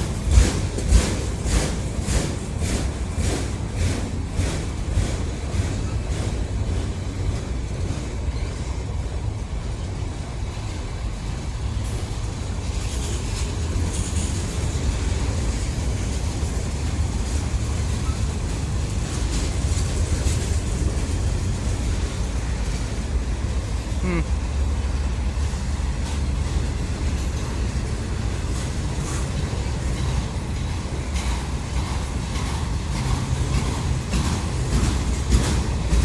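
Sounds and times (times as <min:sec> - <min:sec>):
train wheels rumbling on rail: 0:00.0 - 0:36.0.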